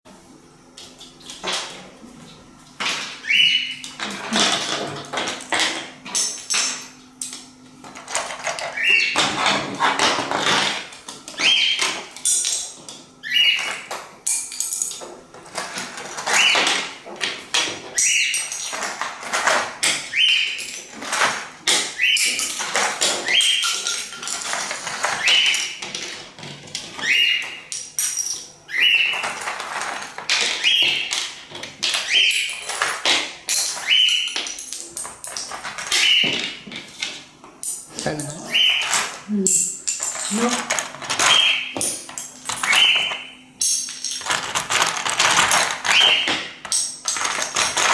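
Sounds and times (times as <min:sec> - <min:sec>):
bird chirping: 0:03.2 - 0:03.8, 0:08.7 - 0:09.2, 0:11.4 - 0:11.8, 0:13.2 - 0:13.9, 0:20.1 - 0:20.6, 0:27.0 - 0:27.7, 0:28.7 - 0:29.3, 0:33.8 - 0:34.4, 0:38.4 - 0:39.0, 0:41.3 - 0:41.8, 0:42.6 - 0:43.4, 0:45.9 - 0:46.5
plastic bricks clattering: 0:39.9 - 0:47.9.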